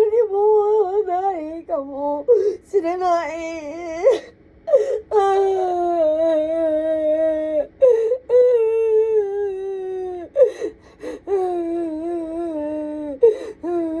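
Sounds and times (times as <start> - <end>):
woman crying and wailing: 3.6 - 14.0.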